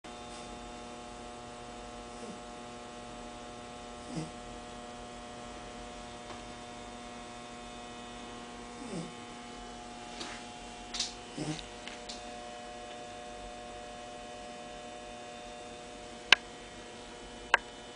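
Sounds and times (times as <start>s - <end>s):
electrical hum: 0.1s - 17.9s
puppy snoring: 0.2s - 0.6s, 1.9s - 2.7s, 3.8s - 6.0s, 8.6s - 10.4s, 11.0s - 12.3s.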